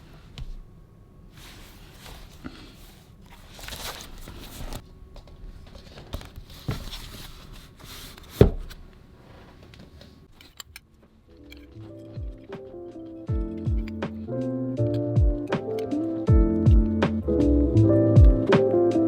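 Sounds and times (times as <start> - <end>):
wrapping crinkling and rustling: 1.4 - 4.8.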